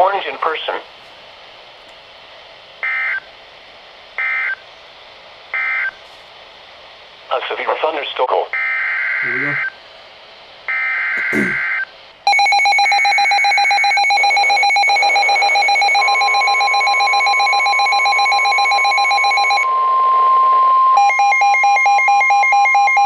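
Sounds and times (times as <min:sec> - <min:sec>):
steady warning alarm tone: 0:08.6 - 0:09.7, 0:10.7 - 0:23.0
pulsing alarm: 0:10.7 - 0:23.0
loud fast pulsing beep: 0:12.3 - 0:19.6.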